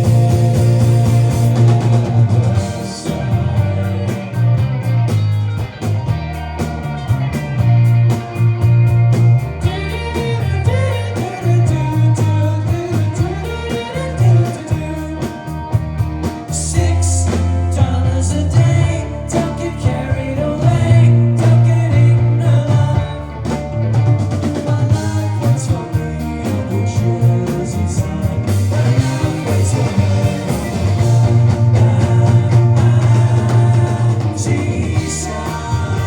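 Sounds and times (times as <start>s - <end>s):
rock band playing: 0.0s - 36.0s
steady drum beat: 0.0s - 36.0s
strong bass line: 0.0s - 36.0s
person singing: 9.6s - 15.3s, 24.7s - 36.0s.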